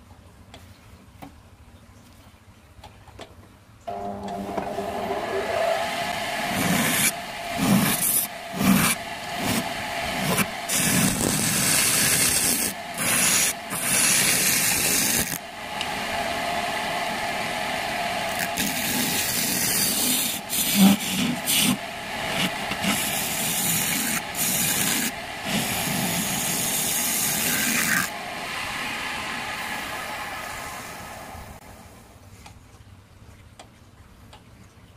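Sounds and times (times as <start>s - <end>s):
wood lathe spinning: 4.0s - 31.7s
tool scraping spinning wood: 4.3s - 15.4s, 18.0s - 29.5s.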